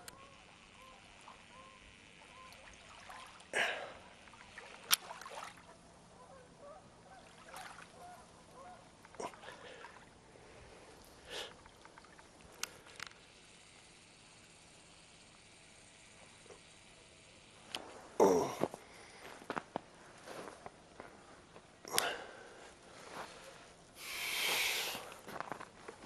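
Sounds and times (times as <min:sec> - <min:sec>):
geese honking: 0:06.1 - 0:07.4, 0:08.0 - 0:08.9.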